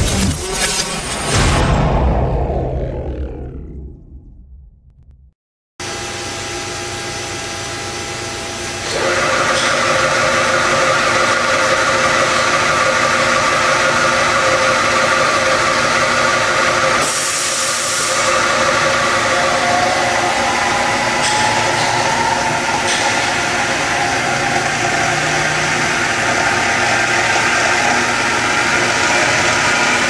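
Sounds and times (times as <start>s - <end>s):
drill press whining: 8.8s - 30.0s.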